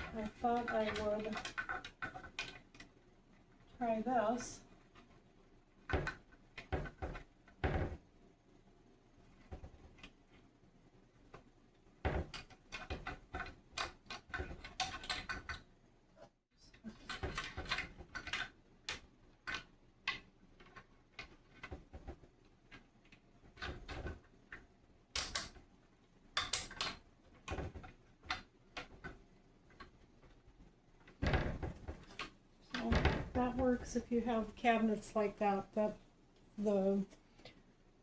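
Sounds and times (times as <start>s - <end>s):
plastic lock clicking and rattling: 17.0s - 25.7s.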